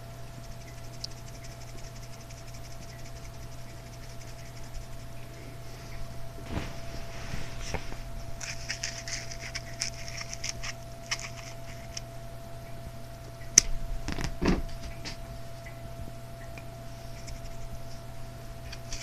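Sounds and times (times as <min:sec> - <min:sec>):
cat claws pattering and scratching: 0:00.4 - 0:12.1, 0:17.0 - 0:19.0.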